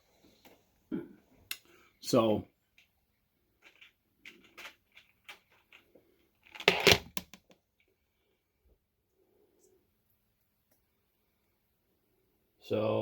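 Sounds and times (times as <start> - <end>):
wires and connectors clicking: 3.6 - 7.6.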